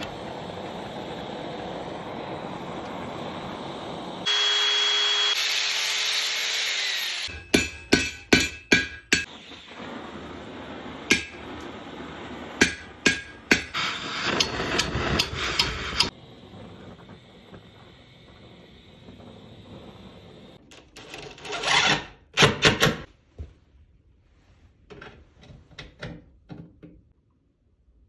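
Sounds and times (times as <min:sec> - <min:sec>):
loud rushing noise with whine: 0:00.0 - 0:05.3
hammer striking steel: 0:07.3 - 0:09.4, 0:11.1 - 0:11.6, 0:12.6 - 0:16.1.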